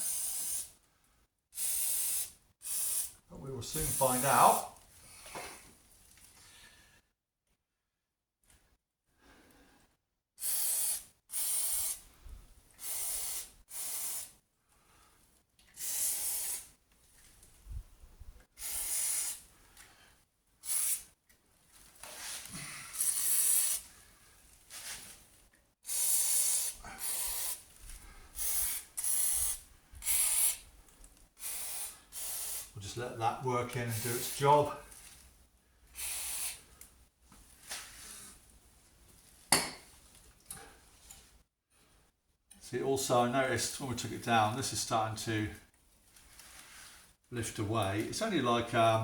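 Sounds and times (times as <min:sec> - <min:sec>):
aerosol can spraying: 0:00.0 - 0:00.7, 0:01.6 - 0:03.2, 0:10.4 - 0:12.0, 0:12.8 - 0:14.3, 0:15.8 - 0:16.7, 0:18.6 - 0:19.4, 0:20.6 - 0:21.1, 0:23.0 - 0:23.8, 0:25.9 - 0:27.6, 0:28.4 - 0:30.6, 0:31.4 - 0:32.8, 0:33.8 - 0:34.5, 0:36.0 - 0:36.6.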